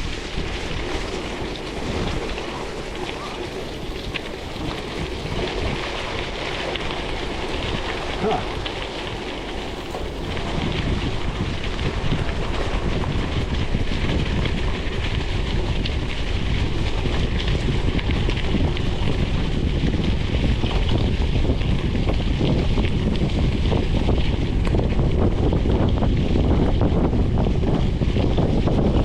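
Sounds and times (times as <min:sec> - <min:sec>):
wind buffeting microphone: 0:00.0 - 0:29.0.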